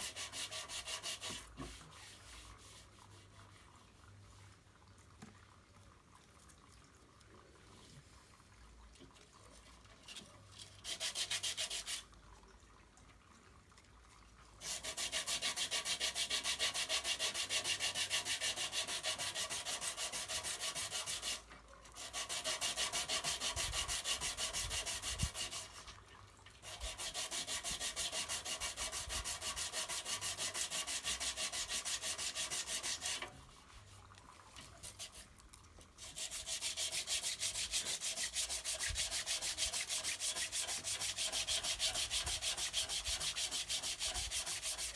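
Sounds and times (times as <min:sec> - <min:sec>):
sandpaper rubbing on filler: 0:00.0 - 0:03.6, 0:10.8 - 0:12.0, 0:14.6 - 0:21.4, 0:22.0 - 0:25.9, 0:26.6 - 0:34.0, 0:34.8 - 0:35.3, 0:36.0 - 0:44.9.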